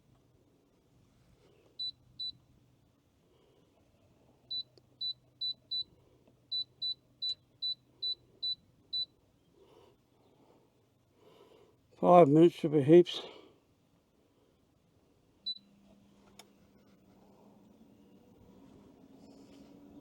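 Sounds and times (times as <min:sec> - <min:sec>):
air fryer beeping: 0:15.5 - 0:15.7.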